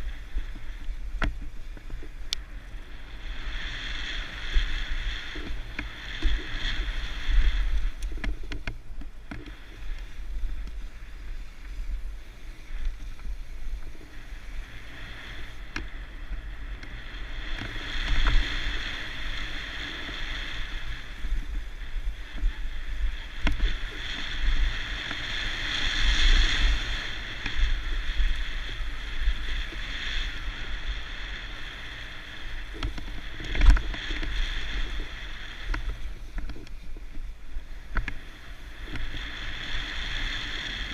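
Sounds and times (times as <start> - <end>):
wind buffeting microphone: 0.0 - 40.9
bike rattles and knocks: 8.0 - 9.6, 32.8 - 34.5.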